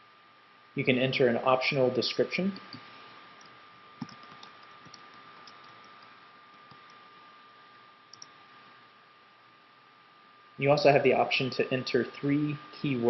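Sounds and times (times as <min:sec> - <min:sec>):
background hiss: 0:00.0 - 0:13.0
faint steady whine: 0:00.0 - 0:13.0
keyboard typing clicks: 0:04.0 - 0:06.1, 0:06.7 - 0:07.0, 0:08.1 - 0:08.3.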